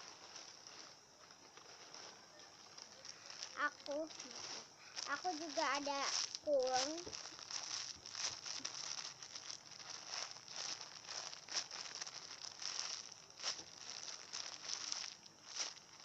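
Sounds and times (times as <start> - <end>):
foam squishy crinkling: 0.0 - 16.0.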